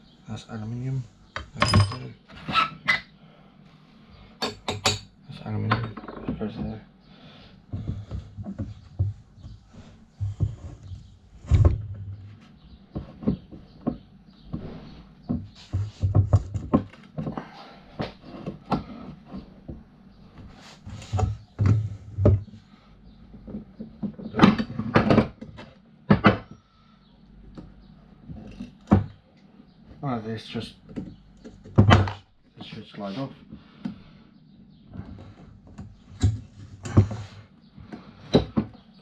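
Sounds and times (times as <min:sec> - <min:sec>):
metal parts and tools clattering: 0:01.5 - 0:02.5.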